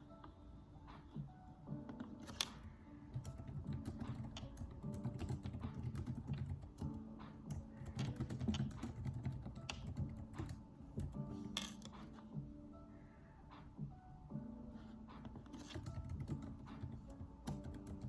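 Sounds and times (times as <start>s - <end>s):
keyboard typing clicks: 1.9s - 12.0s, 15.3s - 18.0s.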